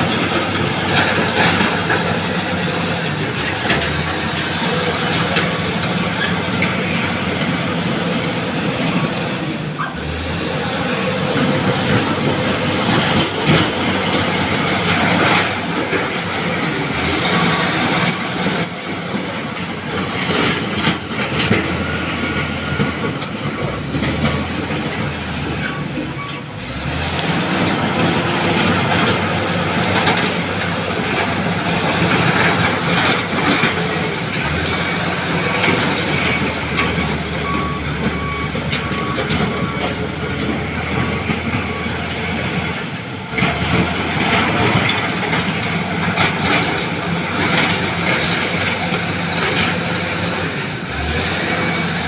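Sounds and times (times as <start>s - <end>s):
diesel engine running: 0.0s - 52.0s
short squeals: 23.2s - 23.6s.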